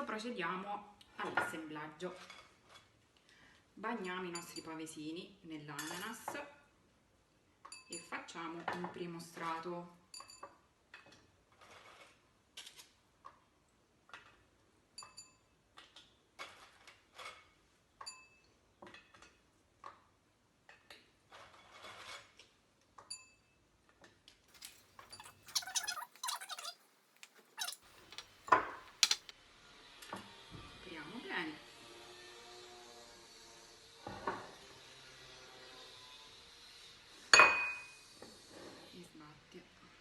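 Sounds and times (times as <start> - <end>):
glass clinking: 27.6 - 29.3.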